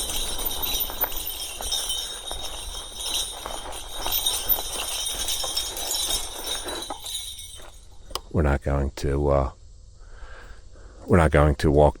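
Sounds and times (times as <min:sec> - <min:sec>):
bike metallic jingling and rattling: 0:00.0 - 0:08.2.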